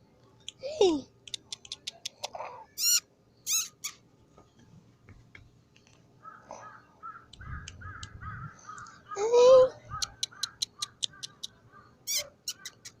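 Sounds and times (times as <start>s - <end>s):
crows cawing: 6.2s - 9.3s.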